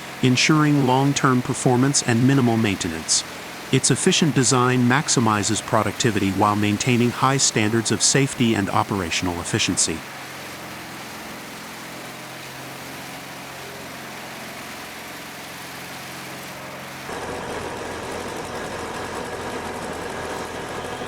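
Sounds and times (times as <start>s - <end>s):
rough machine engine: 0.0s - 10.2s
heavy machinery engine humming: 0.0s - 10.6s.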